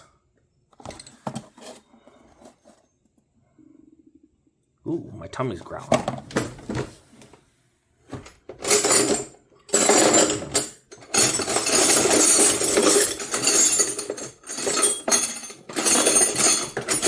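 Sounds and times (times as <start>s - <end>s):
steel wrenches clinking: 8.6s - 17.0s.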